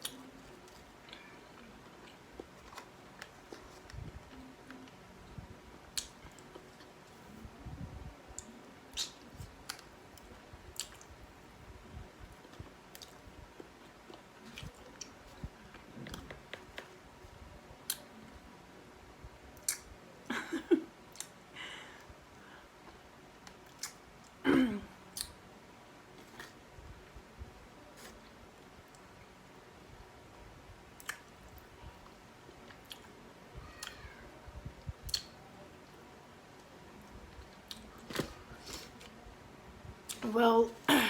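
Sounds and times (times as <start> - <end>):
person chewing food: 32.7 - 33.1
wet mouth clicks: 35.0 - 35.3.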